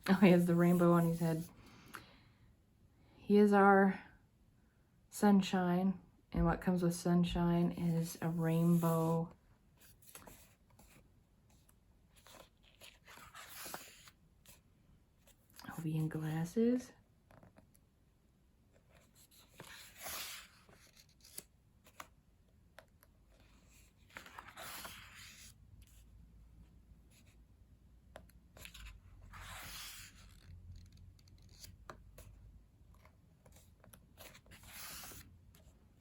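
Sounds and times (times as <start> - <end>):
paper pages swishing: 8.0 - 9.2, 28.6 - 31.7, 34.2 - 35.2.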